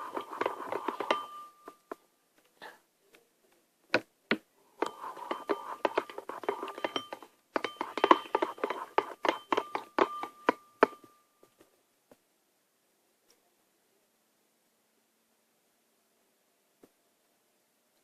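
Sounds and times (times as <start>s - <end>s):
pen knocking against ringing bowl: 0.0s - 2.0s, 4.8s - 11.2s.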